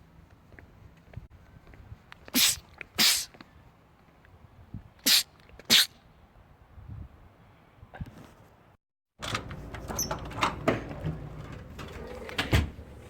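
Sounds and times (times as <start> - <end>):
man sneezing: 2.4 - 3.3.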